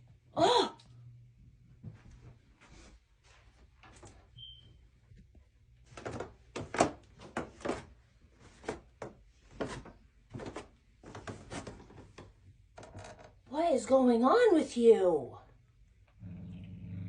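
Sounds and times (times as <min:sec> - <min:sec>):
cat growling and hissing: 0:16.2 - 0:17.0.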